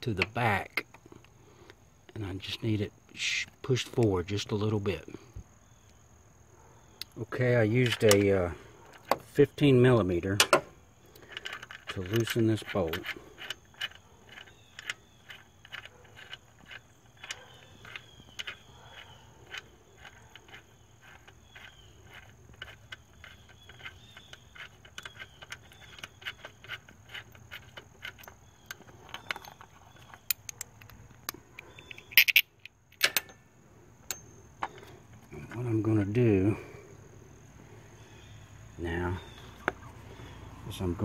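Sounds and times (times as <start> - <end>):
wrench clicking: 10.4 - 33.4.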